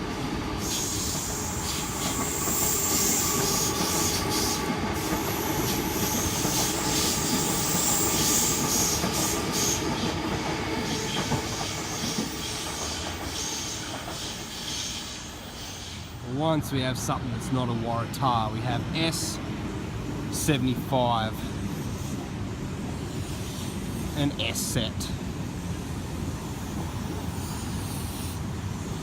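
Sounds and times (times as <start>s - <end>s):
electric train rumble: 0.0s - 29.0s
high wheel squeal: 0.6s - 4.6s, 6.0s - 9.8s, 26.8s - 28.8s.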